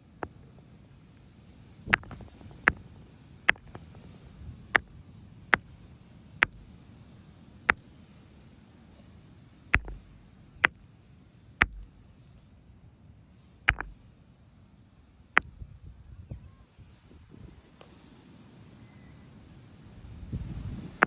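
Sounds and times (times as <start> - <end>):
rock striking knocks: 0.0 - 0.7, 2.0 - 2.8, 3.5 - 4.0, 6.4 - 6.7, 9.8 - 10.8, 11.6 - 12.0, 13.7 - 14.0.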